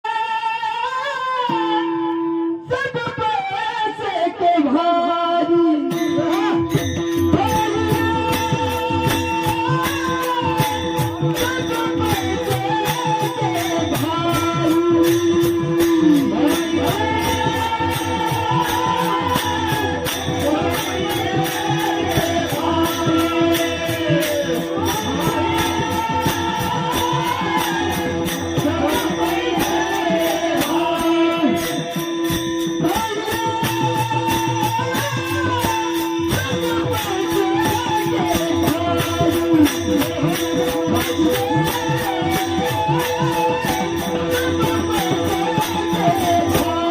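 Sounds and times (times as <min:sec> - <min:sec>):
man singing devotional song: 0:00.0 - 0:46.9
jingling percussion: 0:05.8 - 0:46.9.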